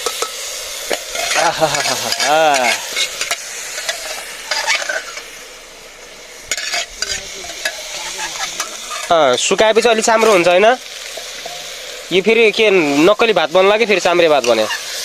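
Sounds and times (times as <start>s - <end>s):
spoon scraping against pot: 0.0s - 5.2s, 6.5s - 9.1s
rice sizzling in hot oil: 0.0s - 15.0s.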